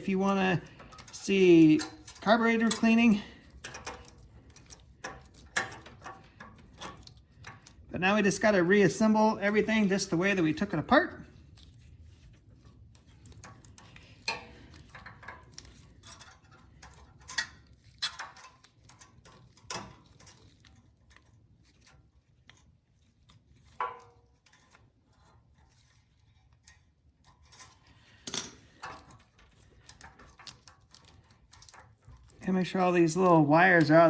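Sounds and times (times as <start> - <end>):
metal tools clicking and clinking: 0.0 - 7.9, 12.6 - 22.7, 26.6 - 34.0.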